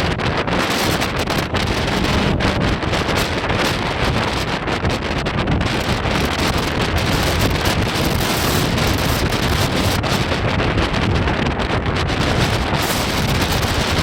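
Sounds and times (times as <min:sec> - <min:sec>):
heavy surf: 0:00.0 - 0:06.3
storm wind blowing on microphone: 0:00.0 - 0:14.0.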